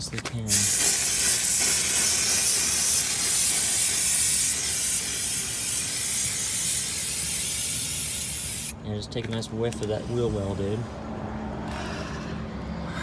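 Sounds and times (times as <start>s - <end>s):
aerosol spray can hissing: 0.5s - 8.7s.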